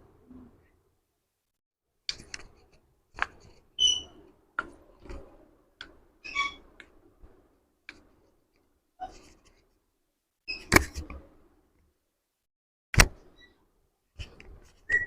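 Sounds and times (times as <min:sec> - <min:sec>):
brief squeaks: 0:03.8 - 0:04.2, 0:06.2 - 0:06.6, 0:10.5 - 0:10.8, 0:14.8 - 0:15.0.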